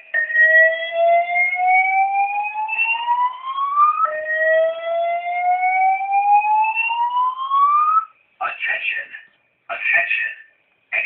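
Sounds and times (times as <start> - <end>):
fire alarm whoop tone: 0.0 - 8.2
spoken evacuation messages: 8.4 - 11.0.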